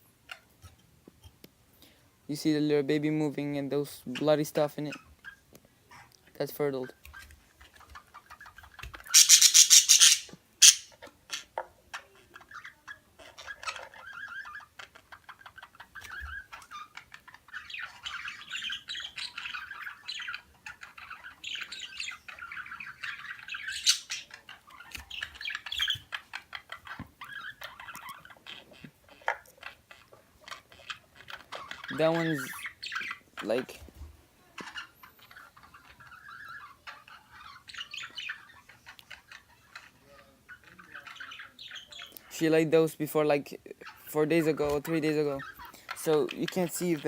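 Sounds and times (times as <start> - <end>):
parakeets chirping: 2.4 - 47.0
loud harsh squawk: 9.1 - 10.9.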